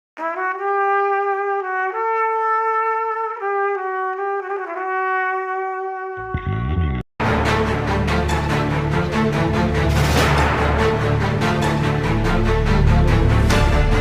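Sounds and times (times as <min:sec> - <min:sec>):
trumpet melody: 0:00.2 - 0:06.4.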